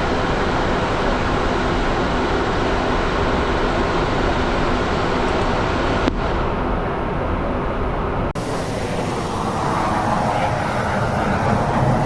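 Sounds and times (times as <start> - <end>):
jet engines running: 0.0 - 12.0
air rushing past cockpit: 8.3 - 12.0.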